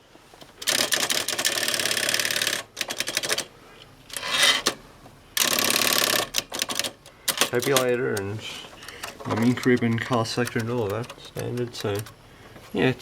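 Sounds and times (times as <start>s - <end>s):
typewriter carriage clacks: 0.6s - 3.5s, 5.4s - 8.3s, 9.0s - 12.1s
typewriter escapement clicks: 5.4s - 8.3s, 9.0s - 12.2s.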